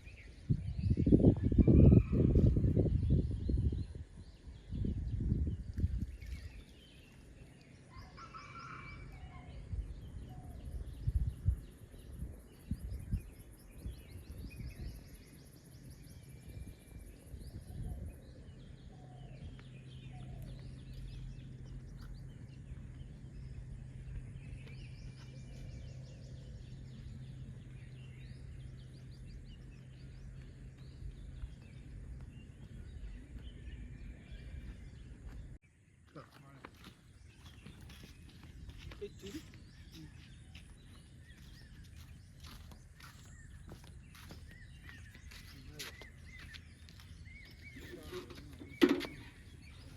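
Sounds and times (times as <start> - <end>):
bird calls and chirps: 0.0 - 49.9
steady low hum: 9.5 - 35.6
low rumbling: 16.4 - 35.6.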